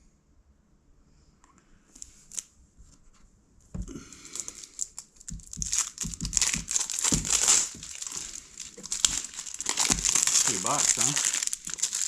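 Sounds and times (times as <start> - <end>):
packaging tearing and crinkling: 4.3 - 12.0.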